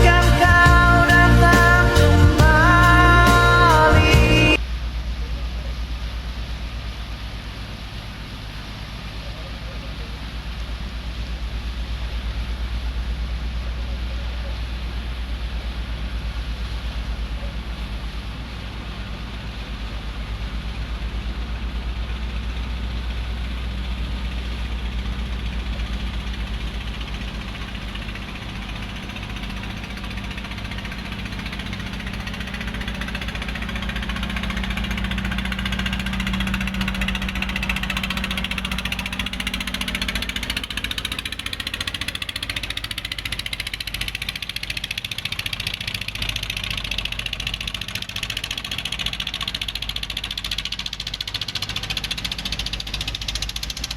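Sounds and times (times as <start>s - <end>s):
high hiss: 0.0s - 4.6s
boat engine humming: 0.0s - 53.9s.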